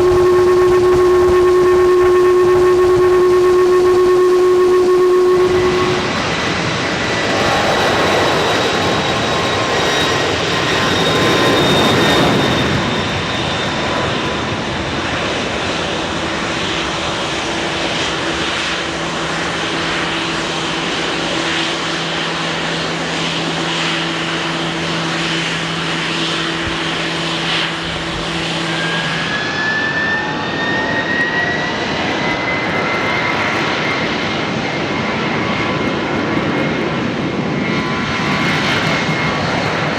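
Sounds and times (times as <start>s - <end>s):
high whine rising in pitch: 0.0s - 16.9s, 23.8s - 34.2s
jet engines roaring: 0.0s - 39.9s.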